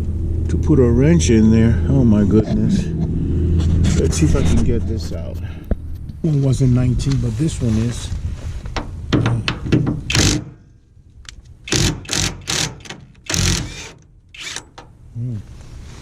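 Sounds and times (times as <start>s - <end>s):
wrench ratcheting: 10.1s - 10.5s, 11.7s - 14.8s.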